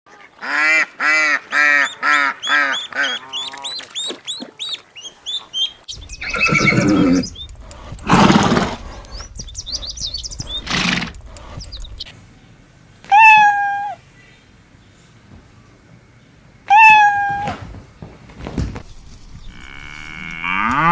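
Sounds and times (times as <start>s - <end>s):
held animal call: 1.6s - 9.2s, 13.1s - 14.1s, 16.7s - 17.6s
small birds chirping: 1.6s - 17.5s
horse whinnying: 6.2s - 7.3s, 8.1s - 8.9s, 16.7s - 17.6s
horse breathy blasts: 6.4s - 11.7s.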